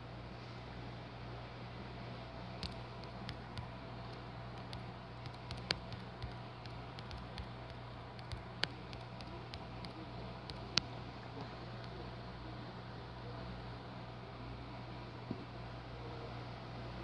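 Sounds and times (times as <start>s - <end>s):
low hum and hiss: 0.0s - 17.0s
faint sharp clicks: 2.6s - 12.0s.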